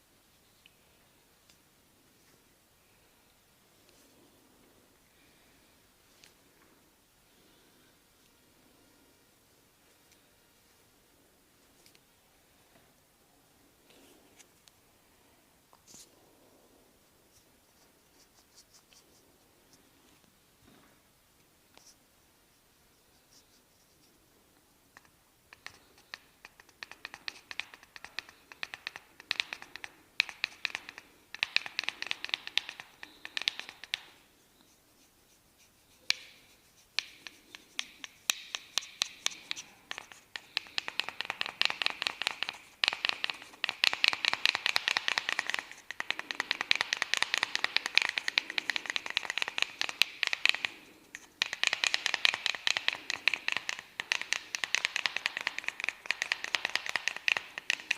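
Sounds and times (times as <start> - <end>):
fingers crackling through hair: 25.5 - 34.2, 35.0 - 57.9.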